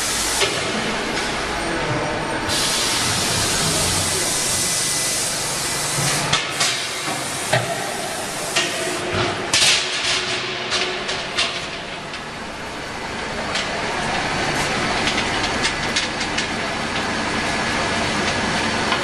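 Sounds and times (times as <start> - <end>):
industrial machinery hissing: 0.0 - 1.8, 2.4 - 9.2.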